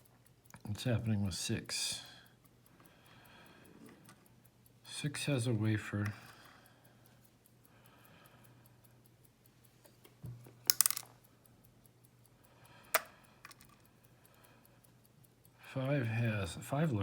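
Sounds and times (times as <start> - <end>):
fast even ticking: 0.0 - 9.8, 10.4 - 17.0
padlock parts clicking: 10.4 - 11.2, 12.9 - 13.9.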